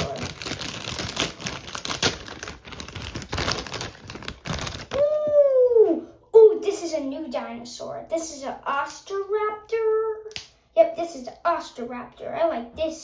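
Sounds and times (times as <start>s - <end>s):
plastic packaging crinkling and tearing: 0.0s - 5.4s
child saying ooh: 5.0s - 7.0s.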